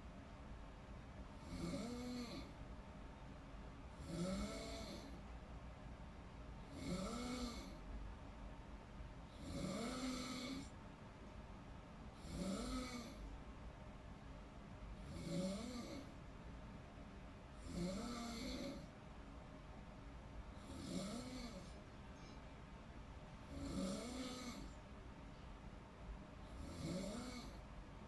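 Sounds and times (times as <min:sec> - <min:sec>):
person snoring: 0:01.4 - 0:02.5, 0:04.0 - 0:05.2, 0:06.7 - 0:07.8, 0:09.4 - 0:10.7, 0:12.2 - 0:13.2, 0:15.0 - 0:16.1, 0:17.6 - 0:18.9, 0:20.6 - 0:21.8, 0:23.5 - 0:24.7, 0:26.6 - 0:27.6.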